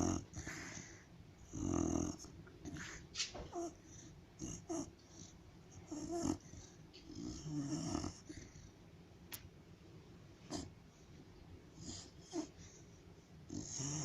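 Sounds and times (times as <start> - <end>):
dog snoring breaths: 0.0 - 8.7, 10.5 - 10.7, 11.7 - 14.0
dog whimpering in sleep: 1.5 - 3.8, 4.4 - 8.4, 11.8 - 12.6.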